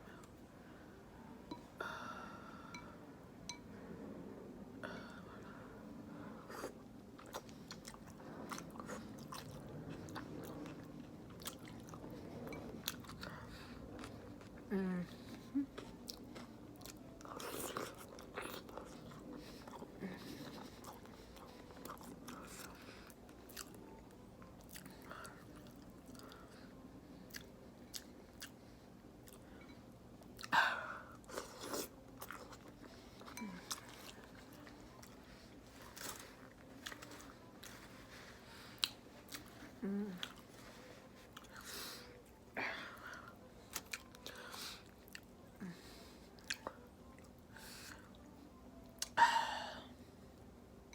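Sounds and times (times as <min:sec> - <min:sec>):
person chewing wetly: 0:07.1 - 0:14.6, 0:15.7 - 0:24.0, 0:27.3 - 0:28.6, 0:31.2 - 0:37.8, 0:43.7 - 0:45.3.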